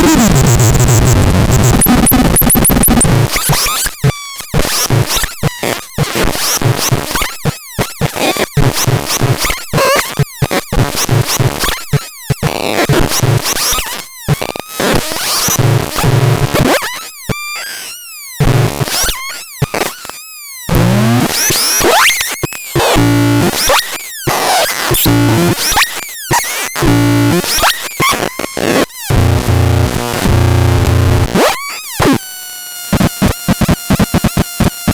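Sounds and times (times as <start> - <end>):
stuttering low bass tones: 0.0 - 3.2
glitchy electronic noise: 0.0 - 3.8, 28.7 - 31.5, 32.9 - 34.9
falling electronic chirps: 0.1 - 3.1.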